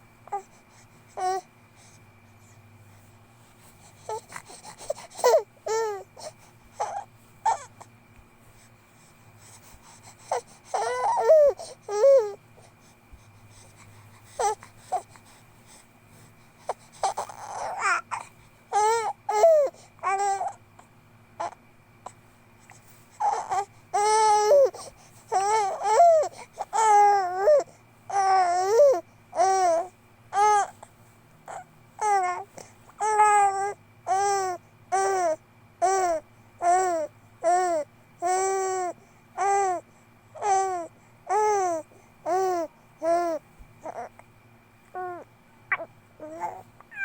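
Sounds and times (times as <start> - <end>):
baby crying: 10.7 - 12.4, 17.1 - 20.6, 25.3 - 30.7, 45.0 - 47.0.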